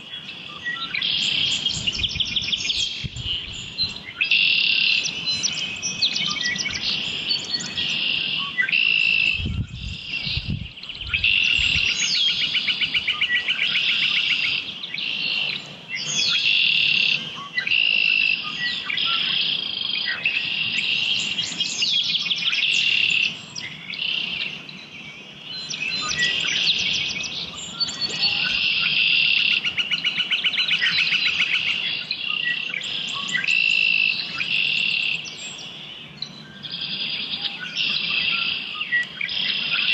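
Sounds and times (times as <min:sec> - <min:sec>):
songbirds trilling: 0:00.0 - 0:39.9.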